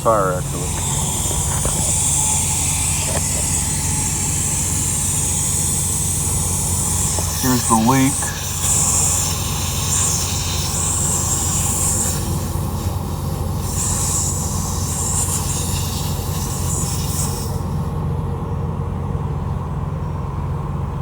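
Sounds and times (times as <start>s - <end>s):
steady low hum: 0.0s - 21.0s
air hissing from tire puncture: 0.1s - 18.0s.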